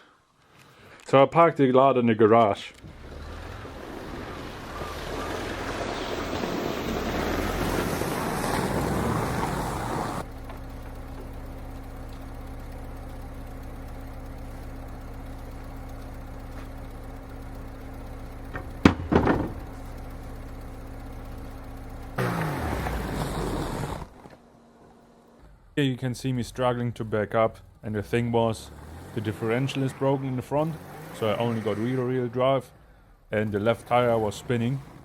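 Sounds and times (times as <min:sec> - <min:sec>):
car engine running hard: 0:02.8 - 0:35.0
sharp knocks: 0:18.5 - 0:19.8.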